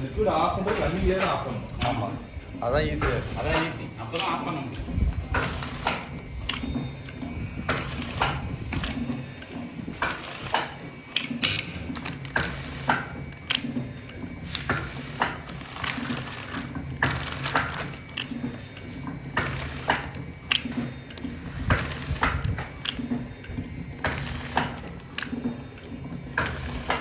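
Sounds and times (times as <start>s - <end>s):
machine clacks and clicks: 0.0s - 27.0s.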